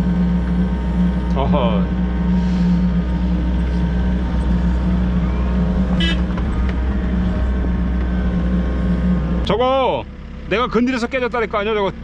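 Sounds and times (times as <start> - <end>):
high-pitched squeal: 0.0 - 9.5
diesel engine running: 0.0 - 12.0.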